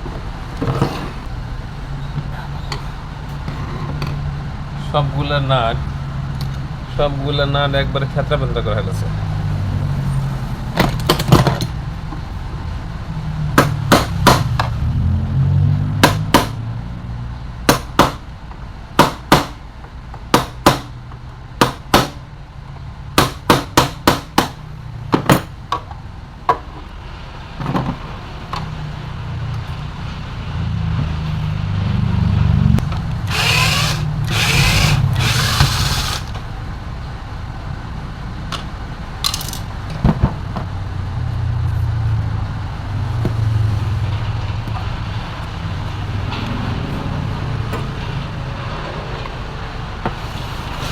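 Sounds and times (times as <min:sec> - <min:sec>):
rasping sound: 0:33.2 - 0:36.4.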